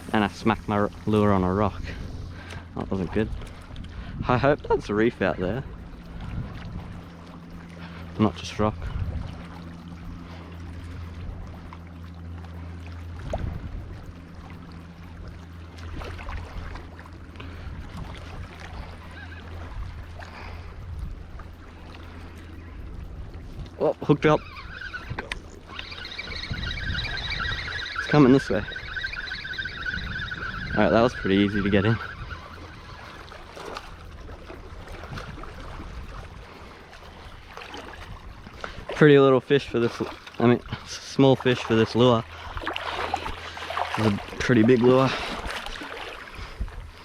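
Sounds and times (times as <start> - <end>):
steady low hum: 0.0 - 47.0
wind buffeting microphone: 0.0 - 47.0
small waves lapping against rocks: 32.9 - 47.0
water splash: 41.4 - 46.3.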